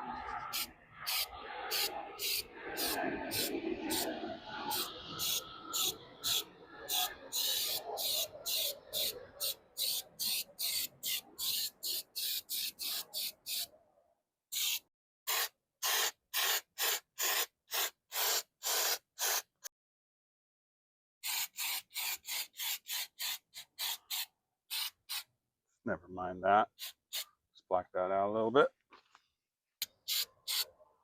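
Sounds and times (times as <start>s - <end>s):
aerosol spray hissing bursts: 0.5s - 4.0s, 4.7s - 13.7s, 14.5s - 19.5s, 21.2s - 25.3s, 26.8s - 27.3s, 30.0s - 30.7s.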